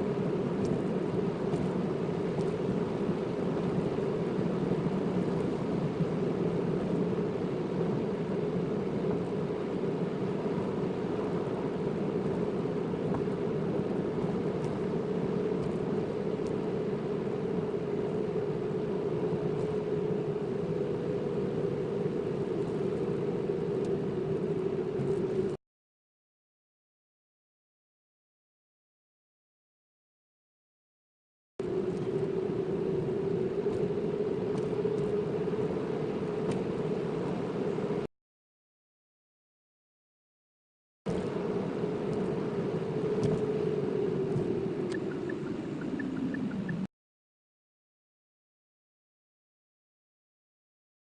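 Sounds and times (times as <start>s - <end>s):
car engine and tyre drone: 0.0s - 25.6s, 31.6s - 38.1s, 41.1s - 46.9s.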